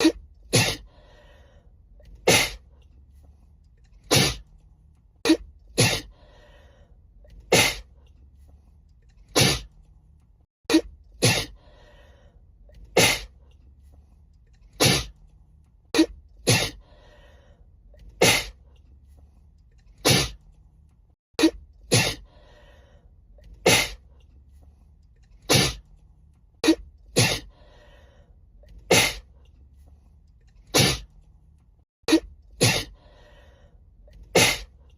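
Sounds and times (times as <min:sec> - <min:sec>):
woman sneezing: 0:00.0 - 0:00.9, 0:05.3 - 0:06.1, 0:10.7 - 0:11.5, 0:21.4 - 0:22.2, 0:32.1 - 0:33.0, 0:34.3 - 0:34.7
breathy intake: 0:00.0 - 0:02.6, 0:05.8 - 0:07.0, 0:11.2 - 0:13.4, 0:16.5 - 0:18.6, 0:21.9 - 0:23.1, 0:27.2 - 0:29.3, 0:32.6 - 0:34.8.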